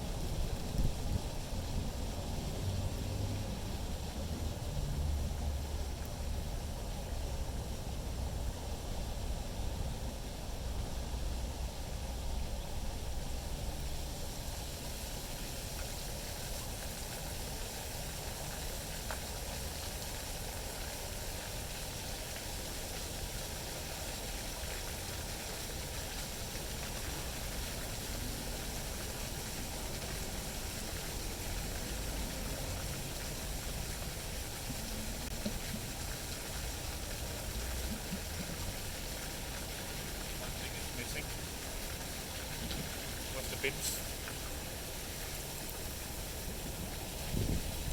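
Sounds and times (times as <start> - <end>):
wind buffeting microphone: 46.7 - 47.9.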